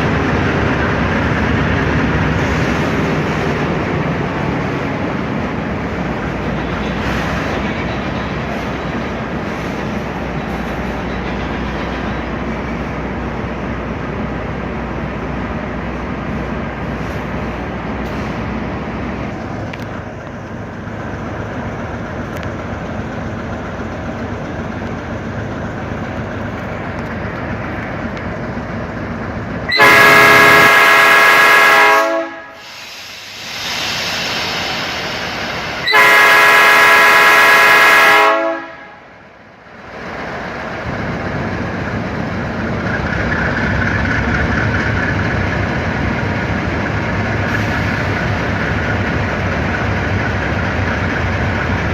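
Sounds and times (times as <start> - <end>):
train rumbling on rails: 0.0 - 51.9
train air horn blasts: 29.7 - 32.9, 35.8 - 39.0.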